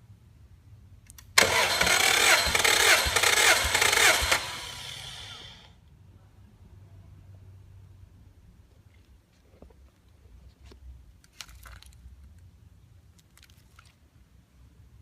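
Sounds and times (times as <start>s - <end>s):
car engine cranking and starting: 1.4s - 5.6s.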